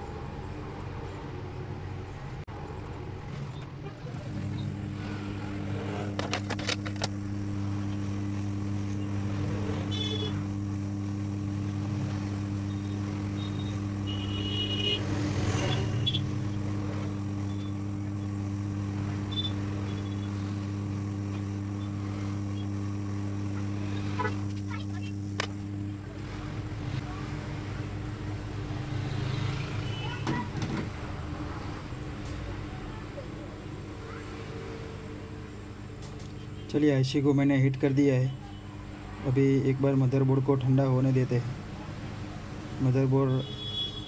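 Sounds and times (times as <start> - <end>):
hot-air station blowing hum: 0.0 - 44.0
clicks: 6.0 - 9.0, 23.0 - 25.8.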